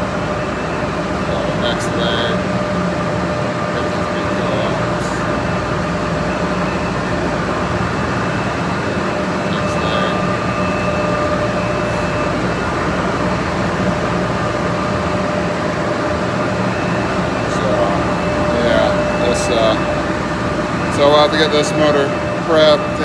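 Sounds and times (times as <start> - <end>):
machinery hum: 0.0 - 23.0
thin steady whine: 0.0 - 23.0.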